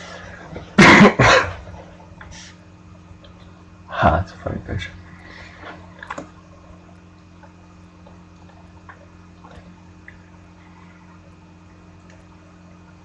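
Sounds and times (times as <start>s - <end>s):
steady electrical hum: 0.0s - 13.0s.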